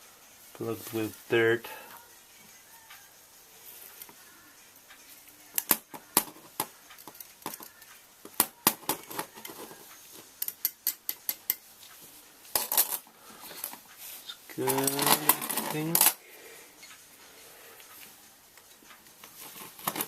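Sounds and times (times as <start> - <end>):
metal tools clicking and clinking: 10.4 - 11.7, 12.6 - 13.8, 14.6 - 16.2.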